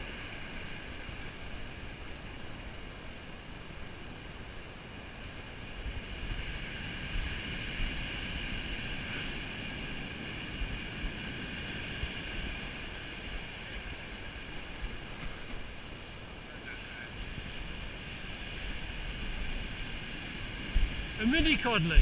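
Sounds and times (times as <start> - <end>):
surf washing on shingle: 16.9 - 22.0
wind buffeting microphone: 17.1 - 22.0.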